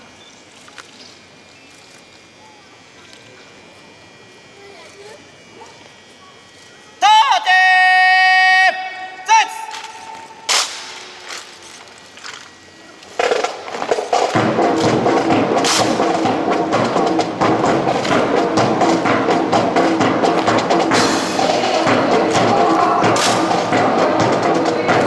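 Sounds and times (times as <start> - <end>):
music with percussive beat: 13.2 - 25.0.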